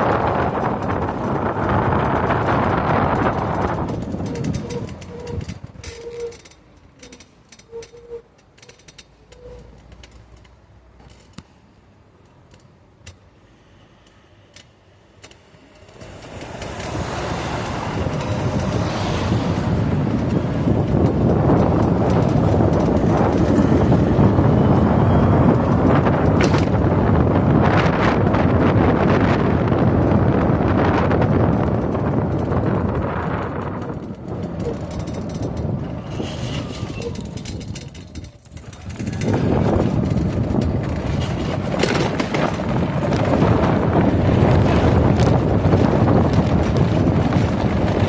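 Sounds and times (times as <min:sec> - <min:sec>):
wind on microphone: 0:00.0 - 0:06.3, 0:15.9 - 0:48.0.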